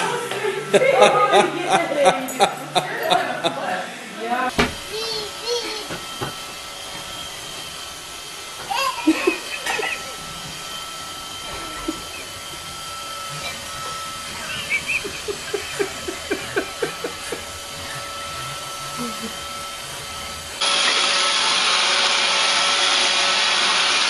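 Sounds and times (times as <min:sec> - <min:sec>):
child laughing: 0:00.7 - 0:03.6, 0:04.9 - 0:06.0, 0:08.6 - 0:10.3, 0:11.5 - 0:12.4, 0:13.4 - 0:17.6
robot vacuum motor whir: 0:04.8 - 0:24.0
child squealing: 0:04.9 - 0:06.0, 0:08.6 - 0:09.4.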